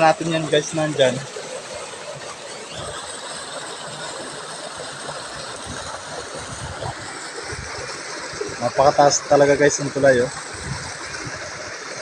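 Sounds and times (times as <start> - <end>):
river flowing: 0.0 - 12.0.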